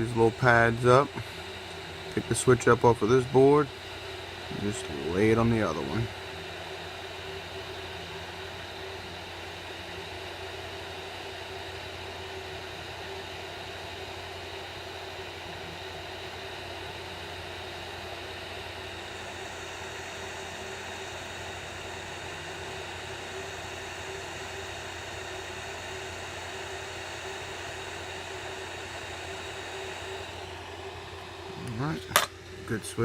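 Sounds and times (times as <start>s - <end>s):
hot air rework station hissing: 0.0s - 11.4s.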